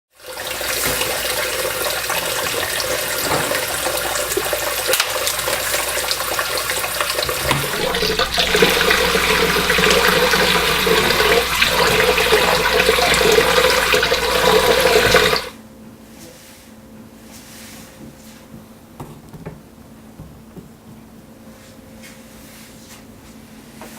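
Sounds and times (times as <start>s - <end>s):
tap water running into sink: 0.2s - 15.5s.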